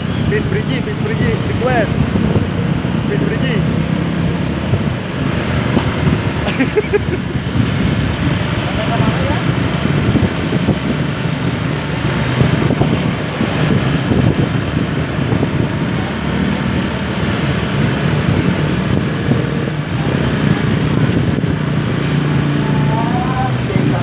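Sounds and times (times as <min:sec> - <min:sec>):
heavy vehicle engine running: 0:00.0 - 0:24.0
traffic noise: 0:00.0 - 0:24.0.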